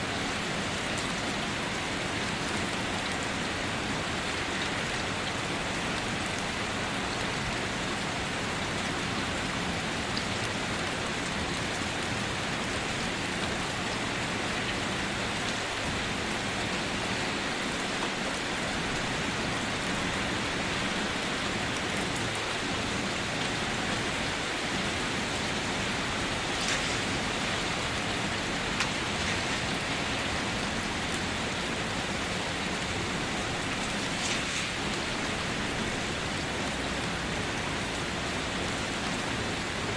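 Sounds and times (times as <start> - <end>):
rain pattering: 0.0 - 39.9.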